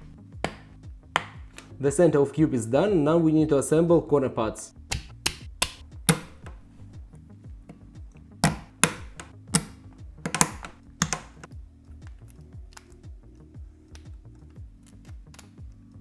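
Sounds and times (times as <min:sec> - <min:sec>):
quiet background music: 0:00.0 - 0:16.0
plastic pieces clicking and knocking: 0:04.9 - 0:06.8, 0:08.4 - 0:11.5.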